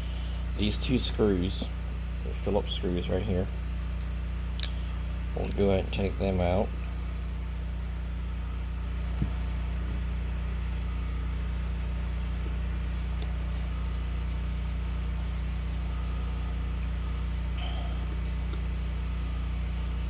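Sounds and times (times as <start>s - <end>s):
low mechanical hum: 0.0s - 20.0s
small click: 3.8s - 4.8s.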